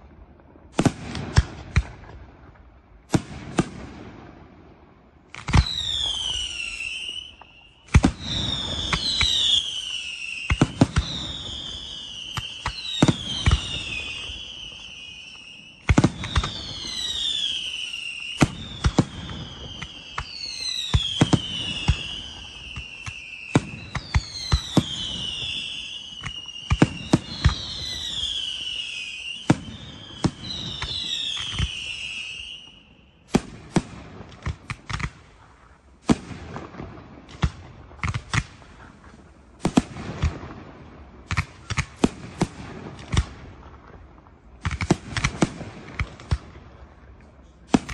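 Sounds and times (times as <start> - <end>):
falling firework whistles: 5.4 - 33.9
firework shells bursting: 15.3 - 28.8.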